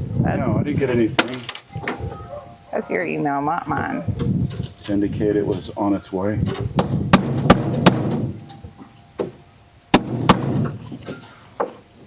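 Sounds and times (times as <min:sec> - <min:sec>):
hammer and pry bar on wooden crate: 0:06.5 - 0:08.4, 0:10.0 - 0:11.8.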